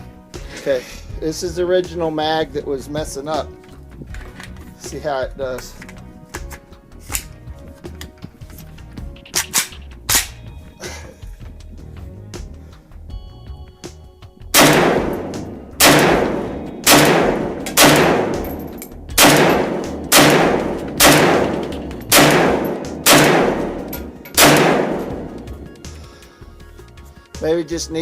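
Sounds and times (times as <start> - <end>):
rifle shots echoing: 14.6 - 25.8.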